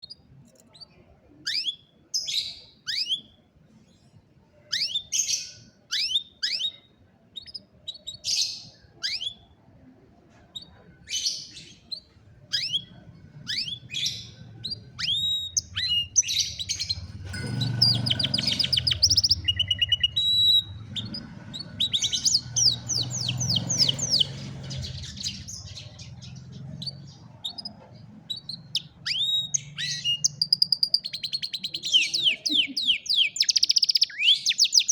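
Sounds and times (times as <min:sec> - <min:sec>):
canary singing: 0:00.0 - 0:03.4, 0:04.6 - 0:09.6, 0:10.5 - 0:34.9.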